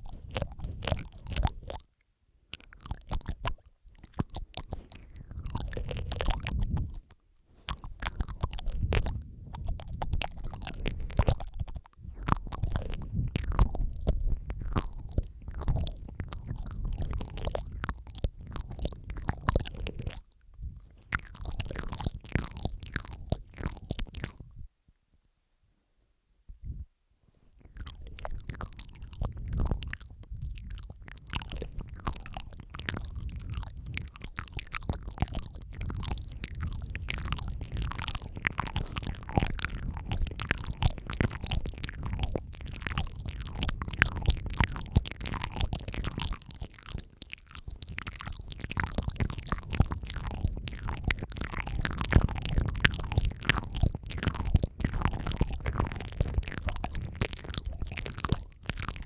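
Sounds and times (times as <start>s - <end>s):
wet mouth clicks and smacks: 0.0s - 24.7s, 27.5s - 59.0s.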